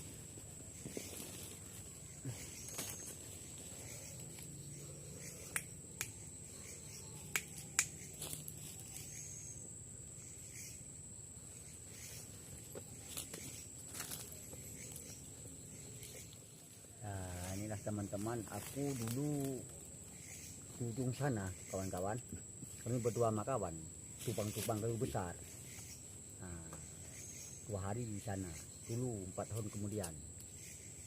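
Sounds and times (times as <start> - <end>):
high-pitched insect drone: 0.0 - 31.0
sharp clicks and snaps: 5.5 - 6.2, 7.3 - 8.1.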